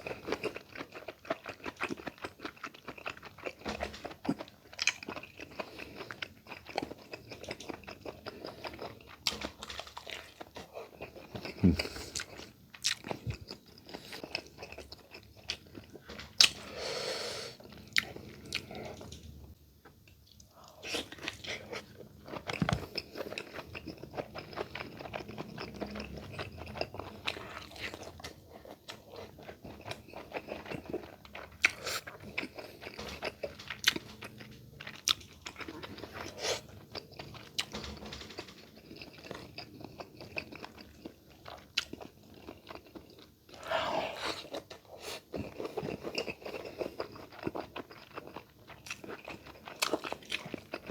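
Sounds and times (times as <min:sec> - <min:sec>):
person chewing crunchy food: 0:00.0 - 0:16.8, 0:17.5 - 0:50.9.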